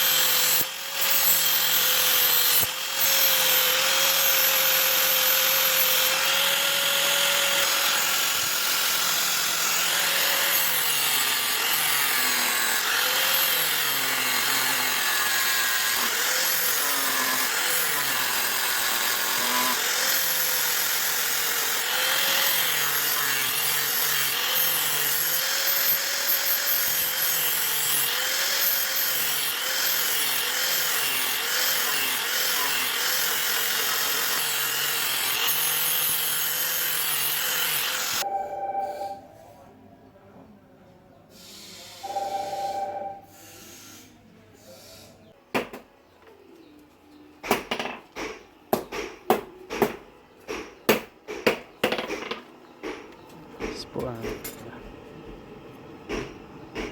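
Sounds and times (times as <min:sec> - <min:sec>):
electric grinder grinding steel: 0:00.0 - 0:38.3.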